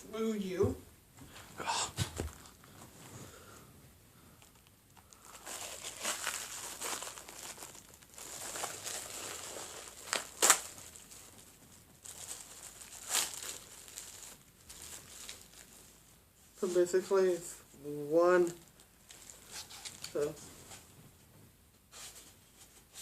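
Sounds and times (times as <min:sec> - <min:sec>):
sharp crackles: 0:04.4 - 0:15.7
plastic packaging crinkling: 0:04.4 - 0:16.0, 0:18.4 - 0:20.4.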